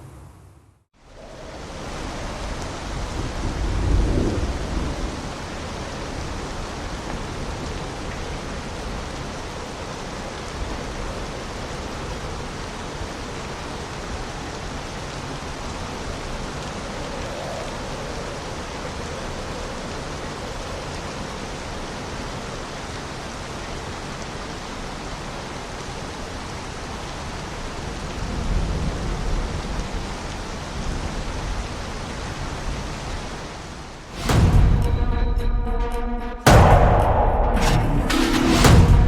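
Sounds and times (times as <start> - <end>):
heavy rain falling: 1.0 - 35.1, 36.5 - 39.0
low rumble: 34.1 - 39.0.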